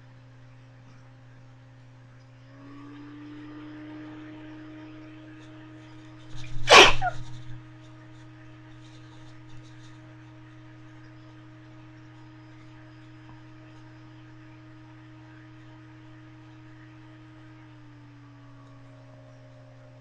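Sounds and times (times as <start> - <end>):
steady low hum: 0.0 - 20.0
person sneezing loudly: 6.7 - 7.2.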